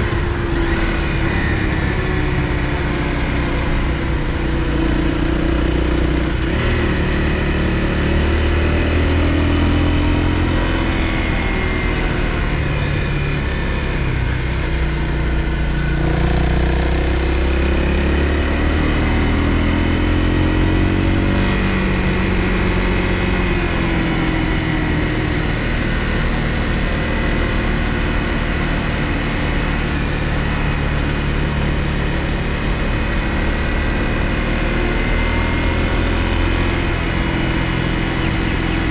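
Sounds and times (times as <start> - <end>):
road noise rushing: 0.0 - 13.7
motorcycle engine revving: 0.0 - 38.9.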